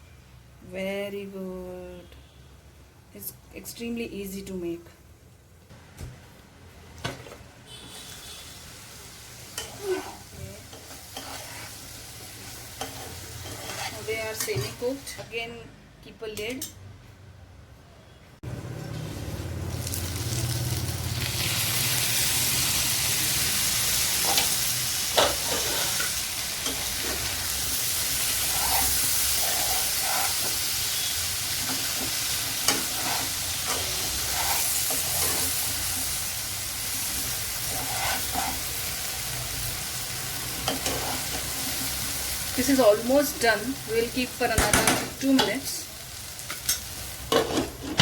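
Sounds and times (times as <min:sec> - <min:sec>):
food sizzling in a covered pan: 0:07.8 - 0:15.2, 0:19.5 - 0:48.0.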